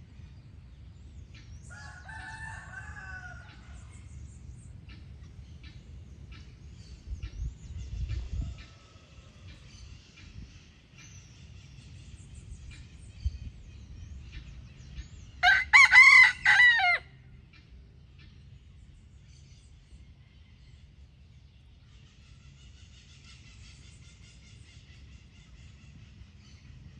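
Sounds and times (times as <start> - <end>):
rooster crowing: 1.7 - 3.8, 15.4 - 17.2.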